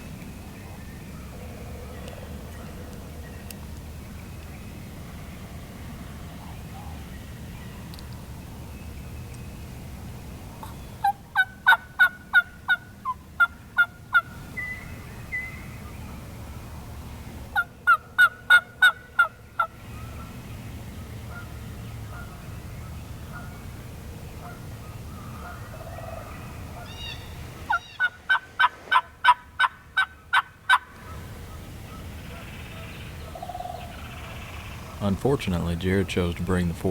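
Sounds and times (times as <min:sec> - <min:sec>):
wild turkey yelping: 0:11.0 - 0:14.8, 0:17.6 - 0:20.2, 0:24.4 - 0:35.1.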